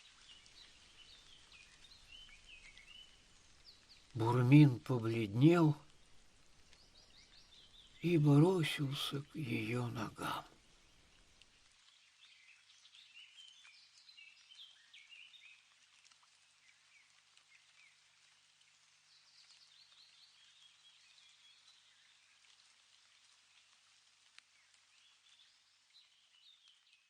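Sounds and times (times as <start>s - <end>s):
faint bird chirping: 0.0s - 11.0s
low steady hiss: 0.0s - 27.0s.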